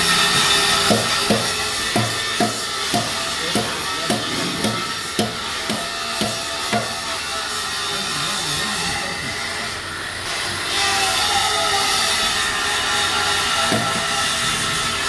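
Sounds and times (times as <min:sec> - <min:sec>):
music with steady drum beat: 0:00.0 - 0:07.4, 0:13.7 - 0:14.4.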